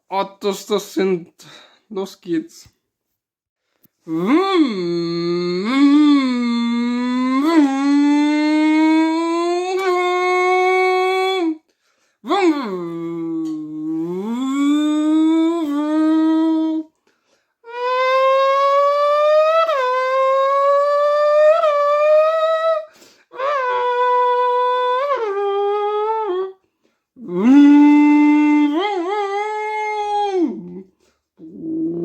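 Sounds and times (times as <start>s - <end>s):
person imitating car engines: 4.1s - 11.6s, 12.2s - 16.9s, 27.2s - 32.0s.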